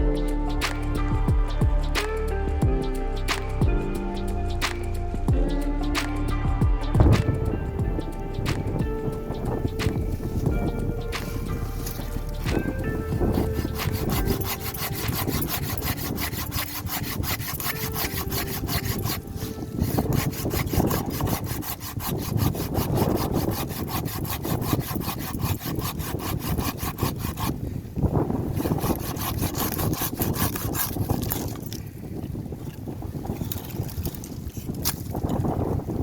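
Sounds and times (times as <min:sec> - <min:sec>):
hand saw cutting wood: 0:11.1 - 0:27.6, 0:28.5 - 0:31.8.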